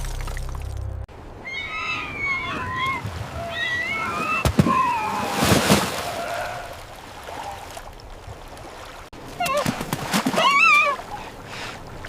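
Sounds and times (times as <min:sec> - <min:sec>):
water sloshing and splashing: 0:00.0 - 0:12.0
animal whining calls: 0:01.4 - 0:05.4.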